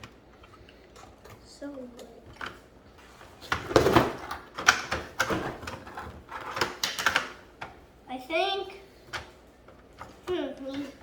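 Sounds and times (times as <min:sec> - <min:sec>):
plastic toy clattering: 0:03.6 - 0:07.4.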